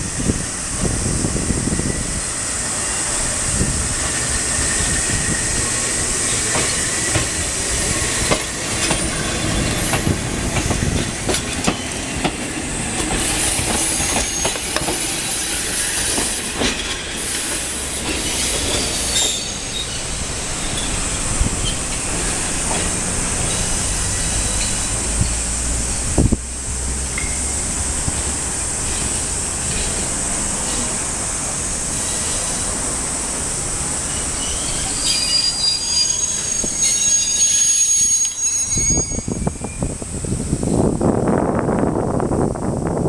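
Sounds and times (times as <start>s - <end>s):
tram wheels clicking over rail joints: 1.7s - 38.5s
high-pitched wheel squeal: 13.2s - 16.4s, 18.1s - 21.0s, 34.2s - 40.0s.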